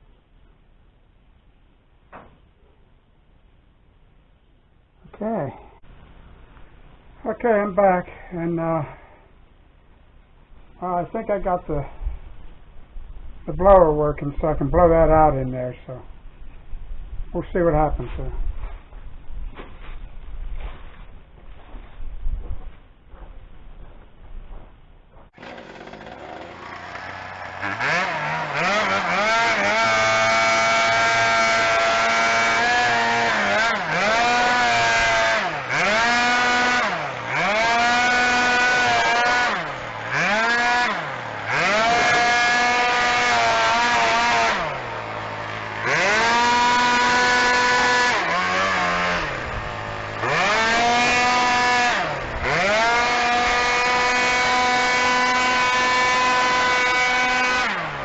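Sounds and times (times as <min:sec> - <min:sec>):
blower engine revving: 0:25.4 - 0:58.0.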